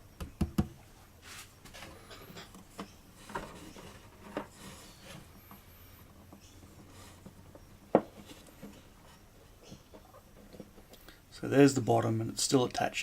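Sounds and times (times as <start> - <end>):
soft rubs on guitar body: 1.2 - 1.6.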